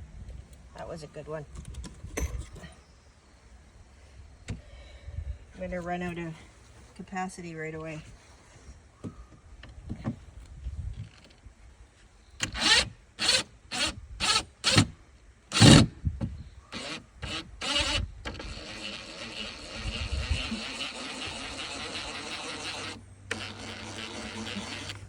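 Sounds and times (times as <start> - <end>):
impact driver hammering screws: 15.5 - 15.9.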